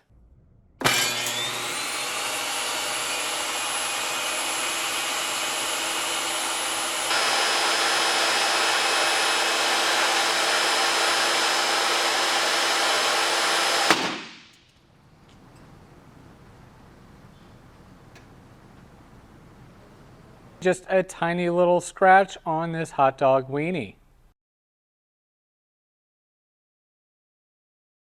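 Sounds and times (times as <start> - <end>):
table saw whining: 0.8 - 14.0.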